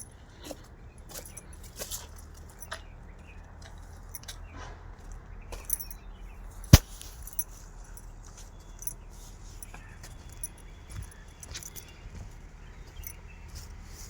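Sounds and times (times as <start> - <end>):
light clicks and clinks: 0.0 - 2.9, 3.6 - 4.5, 5.6 - 12.0, 12.9 - 13.4.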